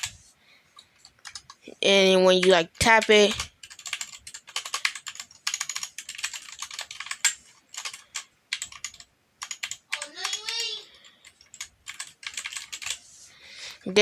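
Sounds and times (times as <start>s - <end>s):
mechanical keyboard keystrokes: 2.4s - 10.6s, 11.2s - 13.0s.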